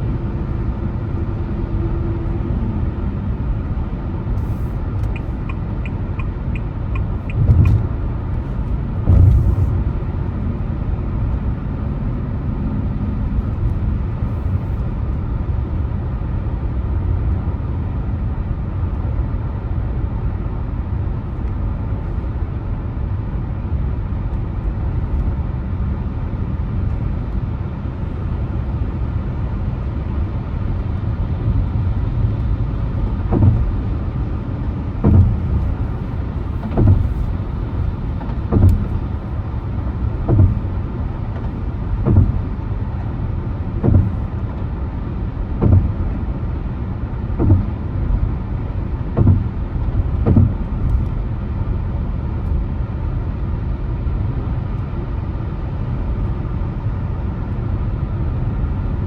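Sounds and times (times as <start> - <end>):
car road and engine rumble: 0.0 - 59.0
soft thumps: 7.2 - 8.0, 9.0 - 9.8, 33.3 - 33.8, 35.0 - 39.2, 40.3 - 42.5, 43.8 - 44.3, 45.6 - 46.0, 47.4 - 47.8, 49.2 - 49.5, 50.2 - 51.0.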